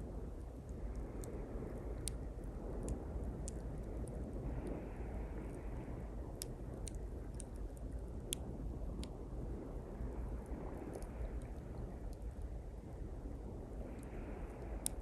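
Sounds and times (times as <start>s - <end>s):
campfire crackling: 0.0s - 15.0s
fire pops: 0.7s - 4.7s
sea waves on shore: 4.0s - 7.4s, 9.3s - 15.0s.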